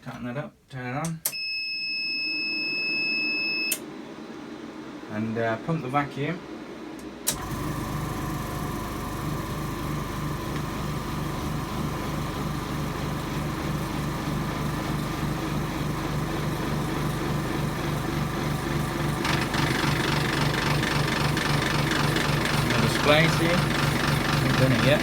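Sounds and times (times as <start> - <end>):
vacuum pump humming: 6.6 - 25.0.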